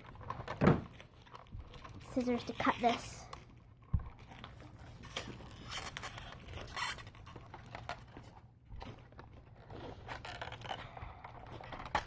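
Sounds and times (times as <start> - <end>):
plastic and cardboard rustles: 0.0 - 12.0.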